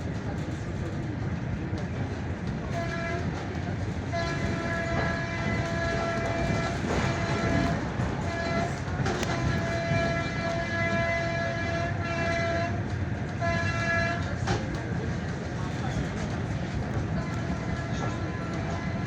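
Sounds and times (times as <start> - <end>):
passing train rumble: 0.0 - 19.0
wheels clacking on rail joints: 1.8 - 11.1
train horn blasts: 2.6 - 3.4, 4.1 - 14.4, 17.2 - 19.0.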